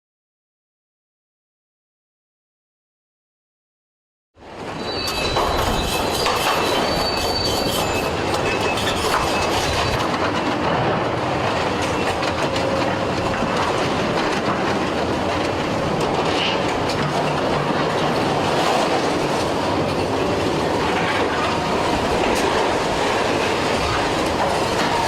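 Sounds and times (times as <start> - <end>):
high metallic squeals: 4.7 - 10.0.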